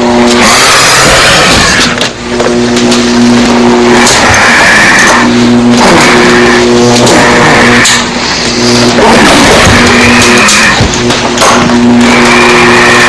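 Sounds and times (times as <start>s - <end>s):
low droning growl: 0.0s - 13.0s
monster screeching cries: 0.4s - 2.0s, 4.0s - 8.1s, 9.0s - 10.9s.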